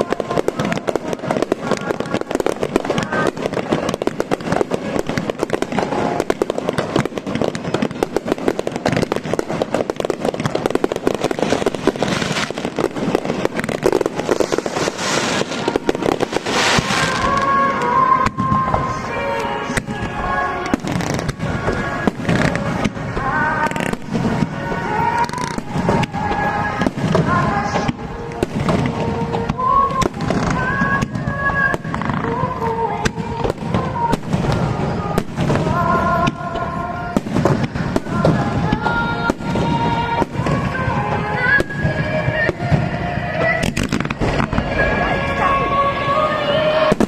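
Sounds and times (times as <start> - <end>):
fireworks bursting and crackling: 0.0 - 47.0
voices or music: 13.3 - 47.0.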